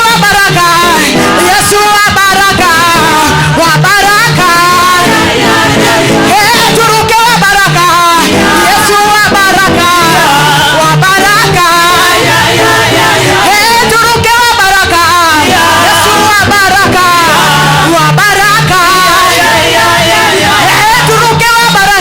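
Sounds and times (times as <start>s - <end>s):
gospel voices singing with band: 0.0s - 22.0s.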